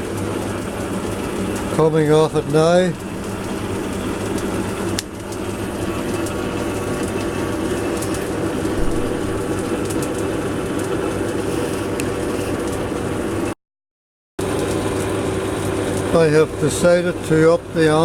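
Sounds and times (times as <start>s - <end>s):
metal lathe cutting metal: 0.0s - 13.4s.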